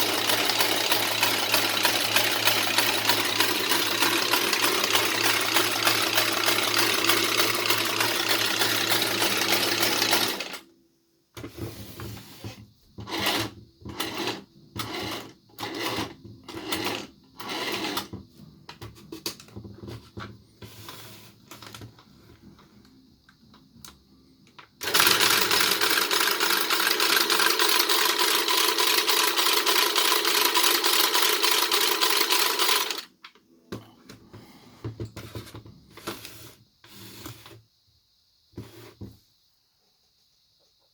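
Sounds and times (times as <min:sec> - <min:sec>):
toy sewing machine running: 0:00.0 - 0:10.7, 0:13.0 - 0:18.1, 0:24.8 - 0:33.1.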